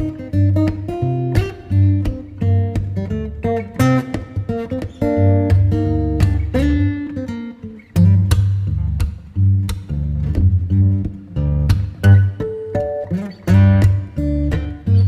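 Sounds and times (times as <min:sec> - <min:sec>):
acoustic guitar plucking and strumming: 0:00.0 - 0:15.0
steady bass line: 0:08.0 - 0:12.4.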